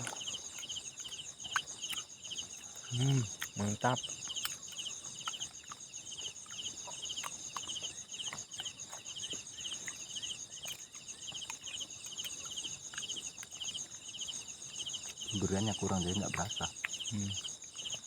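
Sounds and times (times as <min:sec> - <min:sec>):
continuous high insect buzz: 0:00.0 - 0:18.0
crickets trilling: 0:00.0 - 0:18.0
pulsed insect chirp: 0:00.0 - 0:18.0.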